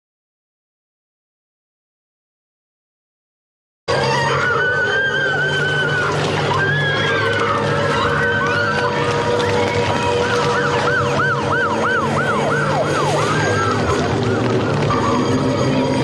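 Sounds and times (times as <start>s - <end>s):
dense background noise: 3.9s - 16.0s
siren-like wailing: 3.9s - 16.0s.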